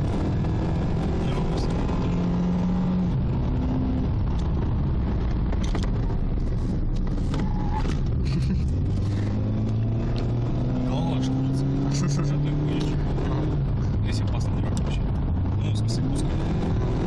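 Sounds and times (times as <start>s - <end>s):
car engine running: 0.0s - 17.0s
road and tyre noise: 0.0s - 17.0s.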